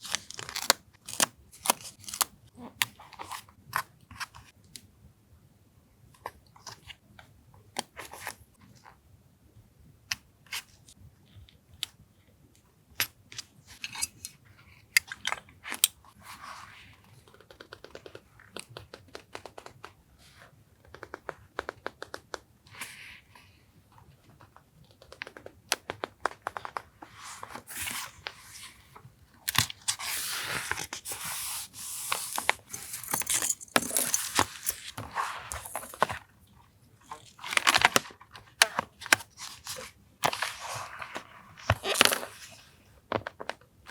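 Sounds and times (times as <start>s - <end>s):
paper tearing and rustling: 30.0s - 36.2s.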